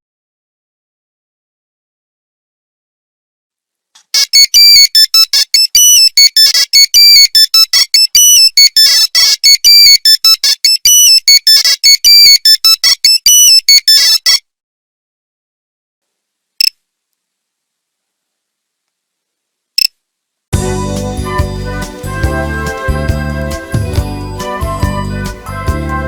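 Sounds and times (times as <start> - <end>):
monophonic phone ringtone: 4.2 - 14.4.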